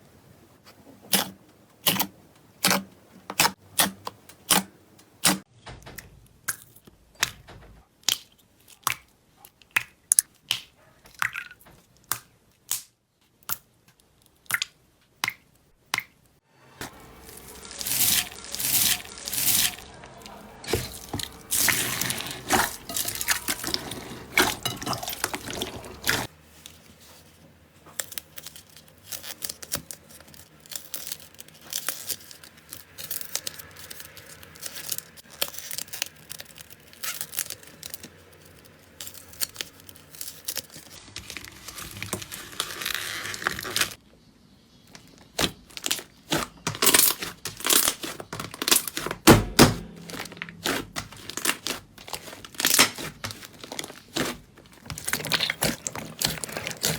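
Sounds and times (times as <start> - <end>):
slime crackling and popping: 16.8 - 26.3, 27.9 - 44.0, 45.3 - 49.2, 49.8 - 56.9.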